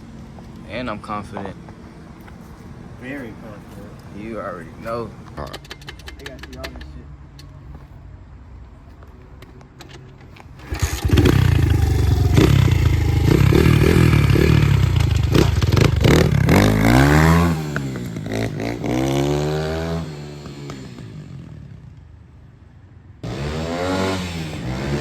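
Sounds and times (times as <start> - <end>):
dirt bike engine revving: 10.6 - 21.8, 23.2 - 25.0.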